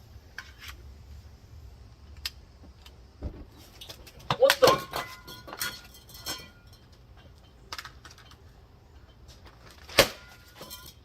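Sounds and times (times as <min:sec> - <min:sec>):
light metallic clicks and clinks: 0:03.8 - 0:09.5.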